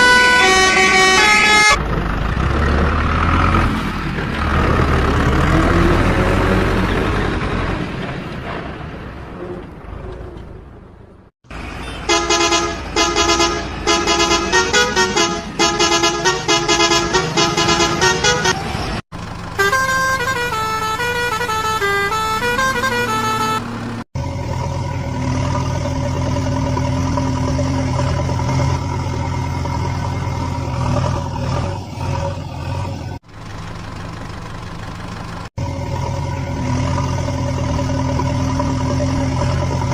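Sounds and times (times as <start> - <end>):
toy horn-like beeps: 19.6 - 23.6
simulated engine drone: 24.2 - 39.9.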